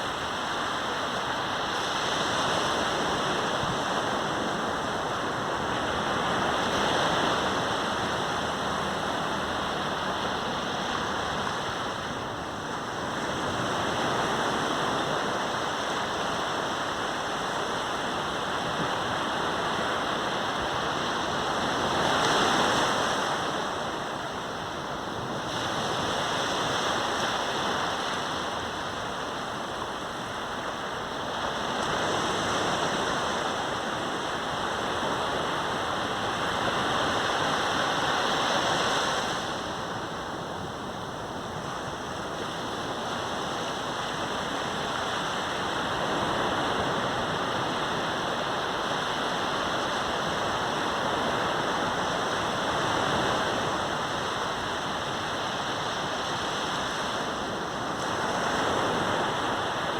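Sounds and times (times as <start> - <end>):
sea waves breaking on beach: 0.0 - 59.9.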